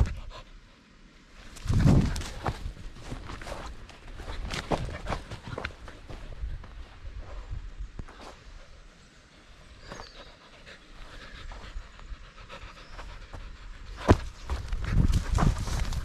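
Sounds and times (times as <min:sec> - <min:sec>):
dog panting: 0:10.0 - 0:15.4
heavy thuds: 0:13.9 - 0:16.0.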